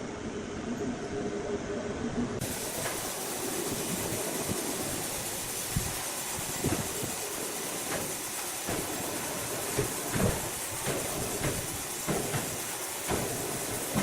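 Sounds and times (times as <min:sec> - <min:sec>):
sawmill machinery rushing: 0:02.4 - 0:14.0
dull knocks: 0:09.7 - 0:14.0.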